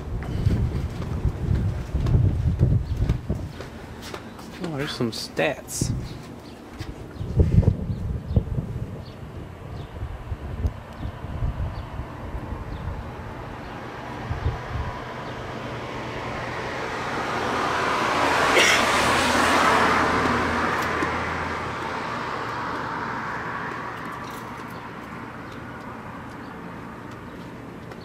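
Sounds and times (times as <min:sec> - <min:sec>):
road vehicle driving past: 0:11.1 - 0:27.0.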